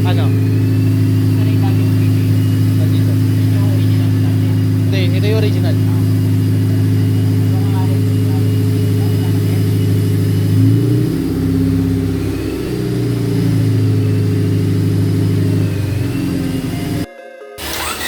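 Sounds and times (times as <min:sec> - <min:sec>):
car engine running: 0:00.0 - 0:18.0.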